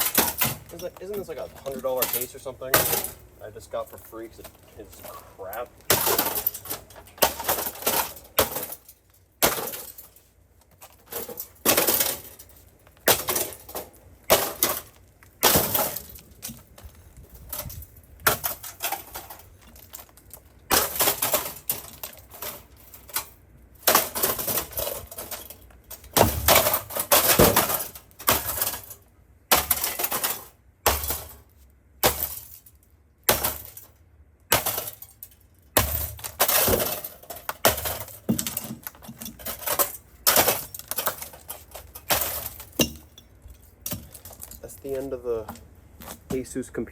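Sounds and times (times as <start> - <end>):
plastic pieces breaking and clinking: 0.0 - 3.3, 4.3 - 44.8
sharp blows smashing a computer case: 5.9 - 10.1, 11.0 - 12.4, 13.0 - 16.6, 20.7 - 23.2, 23.8 - 28.9, 29.5 - 31.4, 32.0 - 32.6, 33.3 - 33.9, 34.5 - 35.1, 35.8 - 43.0.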